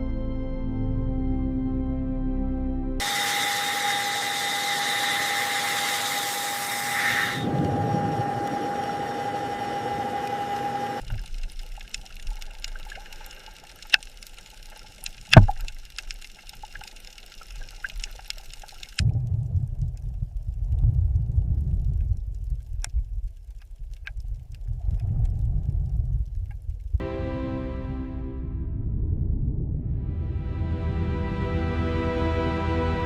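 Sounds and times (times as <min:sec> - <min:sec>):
rushing bubbling water: 0:07.4 - 0:26.4
low rumble: 0:19.0 - 0:33.0
steady tone: 0:27.0 - 0:33.0.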